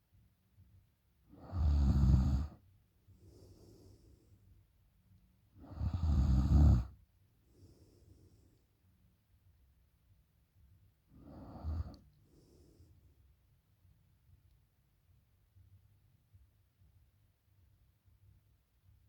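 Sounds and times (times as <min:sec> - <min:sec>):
woman snoring: 0:01.4 - 0:02.6, 0:05.6 - 0:06.9, 0:11.2 - 0:12.0
soft breath: 0:02.3 - 0:04.7, 0:06.7 - 0:08.9, 0:11.1 - 0:13.4.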